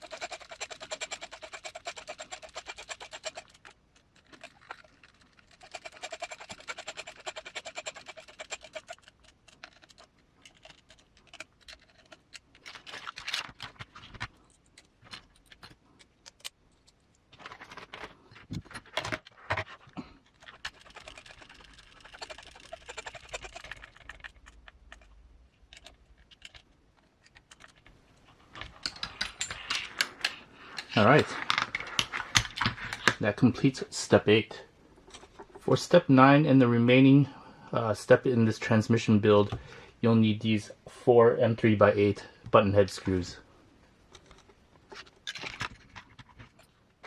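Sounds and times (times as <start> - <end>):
parts and tools clicking: 0.0 - 33.3, 43.8 - 47.0.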